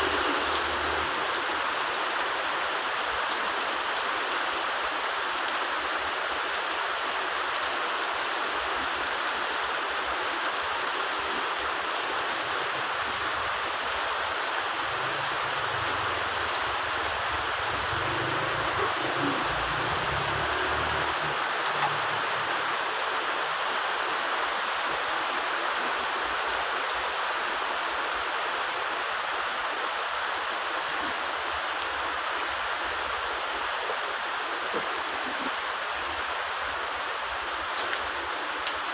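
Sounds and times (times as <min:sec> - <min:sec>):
heavy rain: 0:00.0 - 0:38.9
rain drop ticks: 0:16.1 - 0:22.8.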